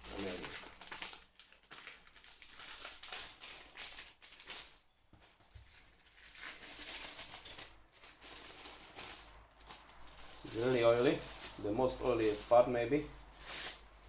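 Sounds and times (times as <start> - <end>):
packaging crinkling and rustling: 0.0 - 14.0.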